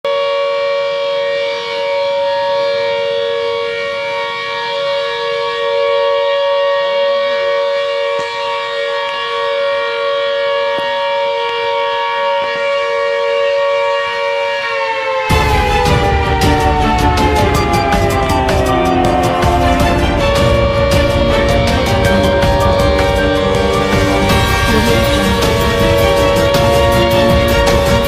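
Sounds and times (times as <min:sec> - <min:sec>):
siren steady tone: 0:00.0 - 0:28.0.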